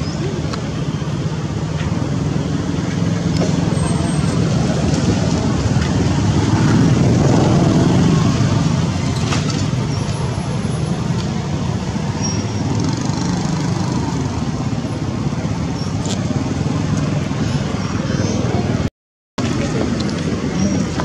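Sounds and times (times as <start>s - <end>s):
road traffic noise: 0.0s - 21.0s
vehicle passing: 3.1s - 9.2s.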